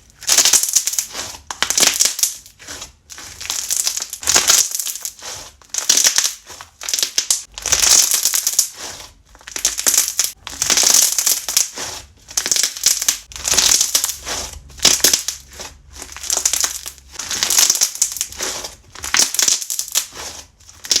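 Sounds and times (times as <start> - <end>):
slime crackling when squeezed: 3.2 - 21.0.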